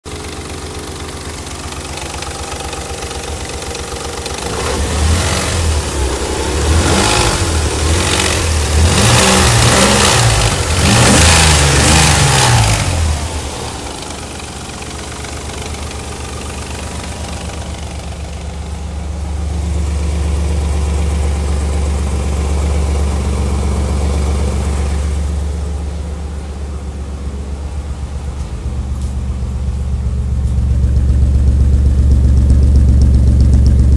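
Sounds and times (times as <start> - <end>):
exhaust popping: 0.0 - 19.5, 28.0 - 33.9
car exhaust idling and revving: 0.0 - 33.9.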